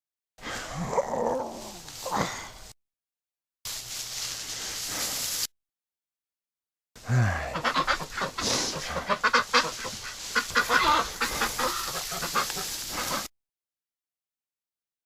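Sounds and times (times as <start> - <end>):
ducks quacking: 7.1 - 13.3
geese honking: 7.5 - 13.3.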